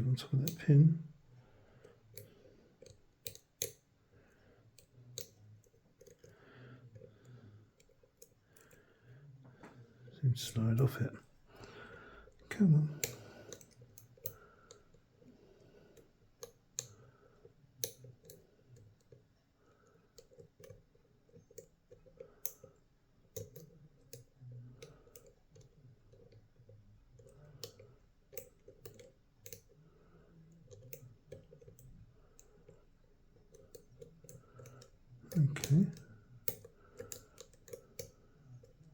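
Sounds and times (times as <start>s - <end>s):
lock pick clicking: 2.1s - 3.8s, 12.4s - 14.9s, 27.2s - 29.8s.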